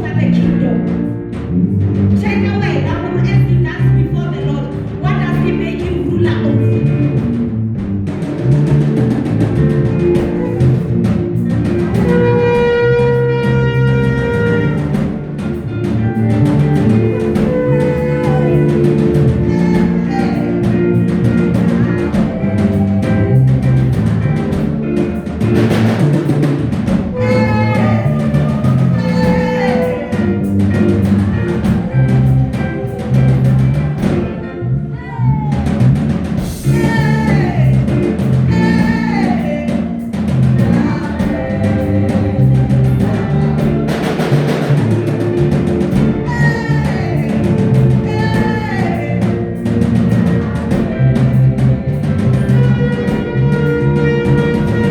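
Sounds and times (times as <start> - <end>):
drum kit beat: 0.0 - 34.6, 35.4 - 54.9
stepping bass line: 0.0 - 54.9
gliding melody lines: 8.4 - 34.9.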